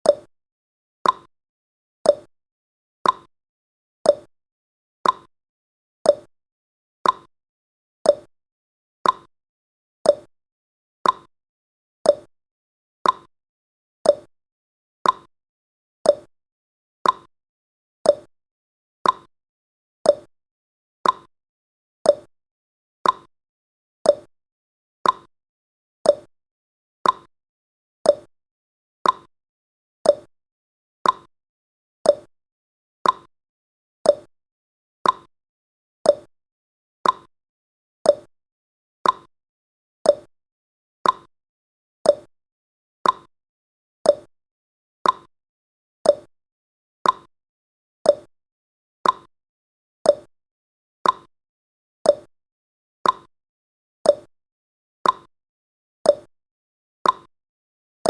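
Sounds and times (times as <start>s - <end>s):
clock ticking: 33.0s - 33.3s, 37.0s - 37.3s.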